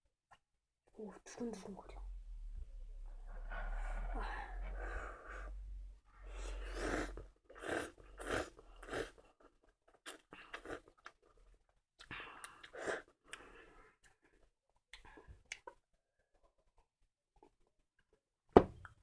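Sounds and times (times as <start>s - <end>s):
person chewing noodles: 6.4s - 15.9s.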